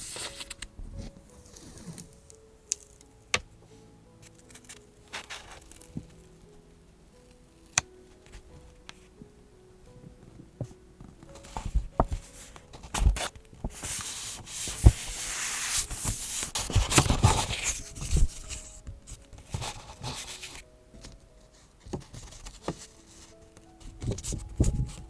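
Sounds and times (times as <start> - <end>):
paper rustling and tearing: 0.0 - 2.2, 4.3 - 6.1, 11.4 - 18.8
light taps on paper: 12.8 - 18.2.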